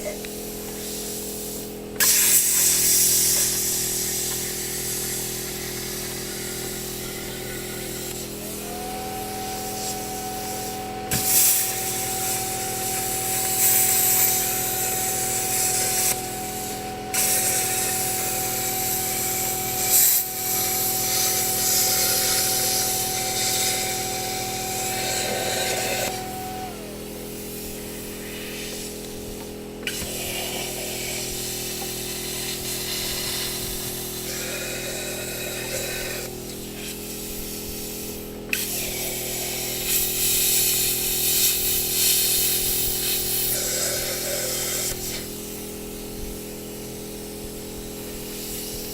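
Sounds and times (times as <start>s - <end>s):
plasma cutter hissing: 0.0s - 48.9s
steady hum: 0.0s - 48.9s
steady whine: 2.5s - 40.4s.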